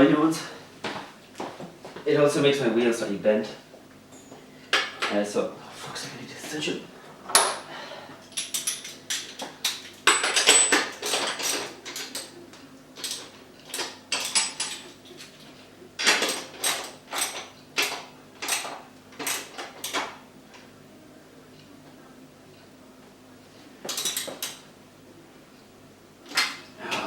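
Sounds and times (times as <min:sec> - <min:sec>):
wrench clinking on metal: 0:08.3 - 0:12.3.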